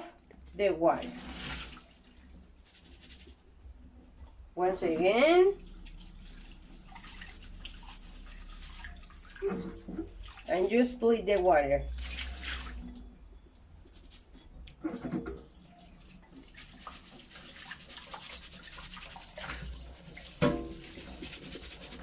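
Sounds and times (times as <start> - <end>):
water sloshing in a bowl: 0.0 - 22.0
water being poured off: 0.9 - 2.5, 4.6 - 10.8, 11.9 - 13.1, 14.8 - 22.0.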